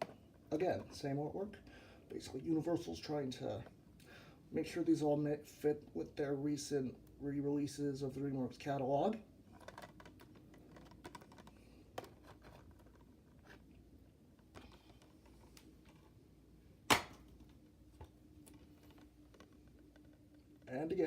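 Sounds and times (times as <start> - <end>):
plastic case being handled: 9.5 - 16.2, 16.9 - 20.7.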